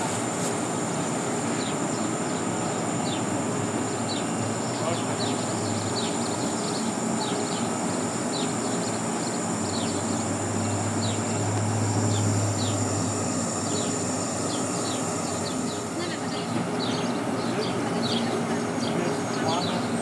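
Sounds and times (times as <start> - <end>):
low hum: 8.7 - 18.4.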